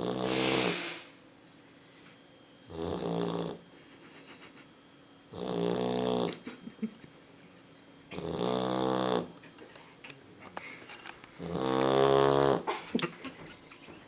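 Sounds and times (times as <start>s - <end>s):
puppy snoring: 0.0s - 1.1s, 2.7s - 3.6s, 5.3s - 6.4s, 8.1s - 9.4s, 11.4s - 12.7s.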